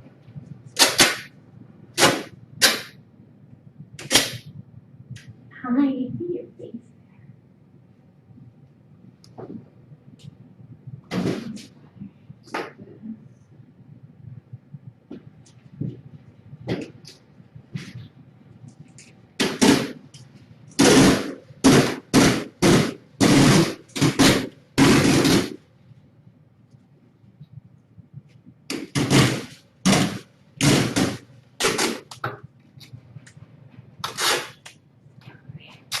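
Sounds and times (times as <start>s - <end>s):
adhesive tape ripping off roll: 34.0s - 34.7s.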